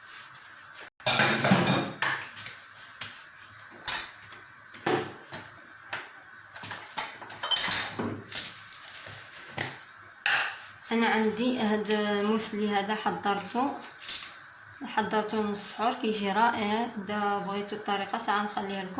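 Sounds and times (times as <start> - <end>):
dishes clattering and clinking: 1.0 - 2.4, 6.5 - 8.5.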